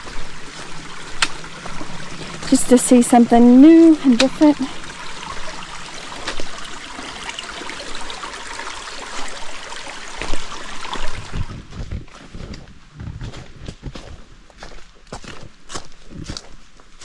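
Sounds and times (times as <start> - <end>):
stream water running: 0.0 - 12.7
footsteps on trail: 11.3 - 17.0.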